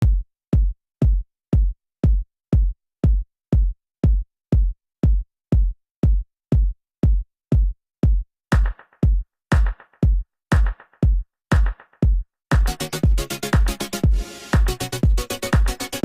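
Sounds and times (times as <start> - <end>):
drum machine kick drum: 0.0 - 16.0.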